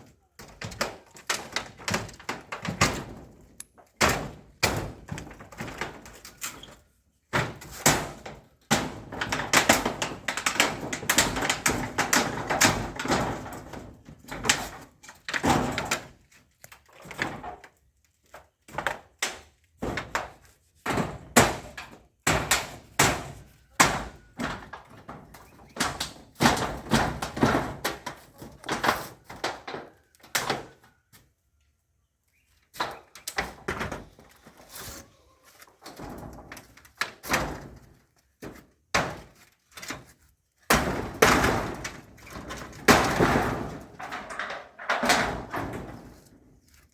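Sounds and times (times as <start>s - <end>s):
clattering: 41.8s - 46.0s.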